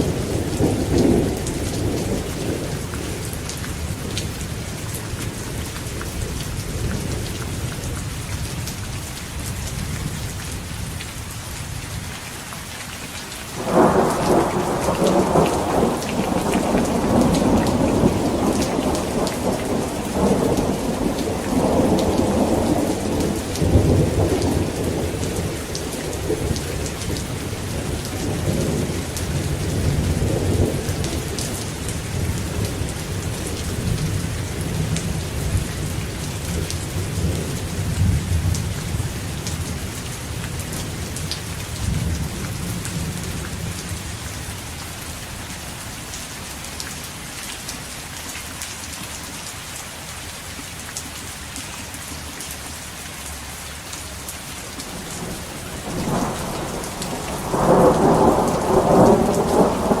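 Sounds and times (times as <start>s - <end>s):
rolling thunder: 0.0s - 4.4s, 13.6s - 39.8s, 54.9s - 60.0s
steady rain: 0.0s - 60.0s
loud thunderclap: 13.6s - 25.5s, 54.9s - 60.0s.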